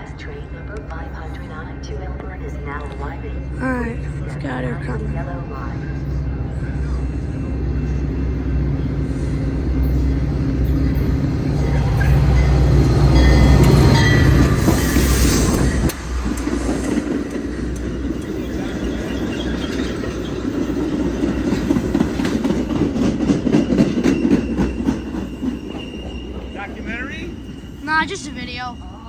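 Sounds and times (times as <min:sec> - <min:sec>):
diesel locomotive rumbling: 0:00.0 - 0:29.0
train wheel rumble and clicks: 0:00.0 - 0:29.0
high squeals: 0:23.6 - 0:29.0.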